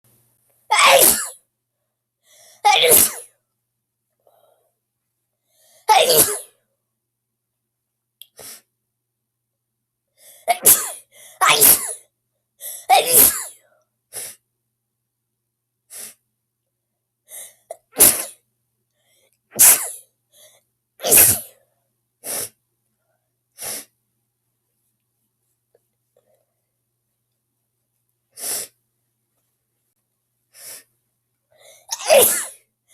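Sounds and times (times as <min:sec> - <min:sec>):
girl sneezing: 0:00.7 - 0:01.4, 0:02.6 - 0:03.3, 0:05.9 - 0:06.5, 0:10.5 - 0:12.0, 0:12.7 - 0:13.6, 0:17.7 - 0:18.4, 0:19.6 - 0:20.0, 0:21.0 - 0:21.5, 0:31.7 - 0:32.6.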